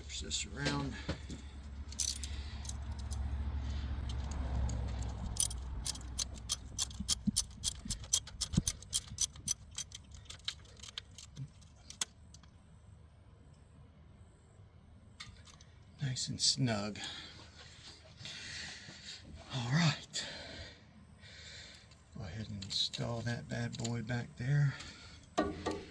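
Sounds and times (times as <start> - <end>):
ratchet clicking: 4.0 - 12.5.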